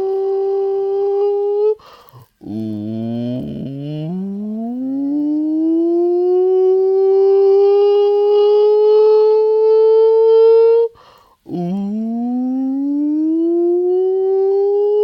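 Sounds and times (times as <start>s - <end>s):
man holding sustained vocal tone: 0.0s - 15.0s
man breathing: 1.8s - 2.4s, 11.0s - 11.4s.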